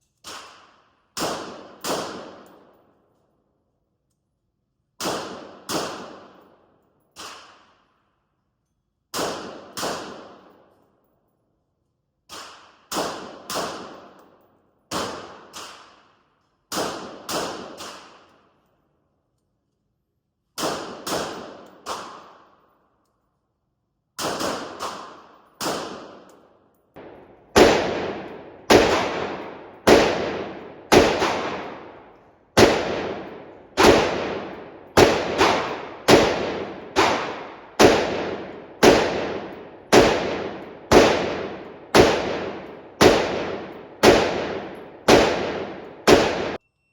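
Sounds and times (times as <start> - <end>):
gunshots echoing indoors: 0.6 - 2.8, 5.0 - 6.8, 9.1 - 10.8, 20.6 - 22.8, 24.2 - 46.6.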